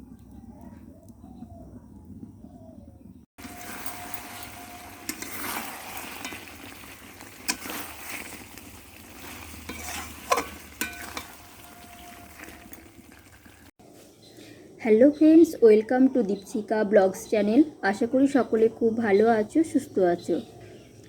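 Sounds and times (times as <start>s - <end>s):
food sizzling in a pan: 3.4s - 13.8s
spatula clinking against pan: 9.6s - 12.8s.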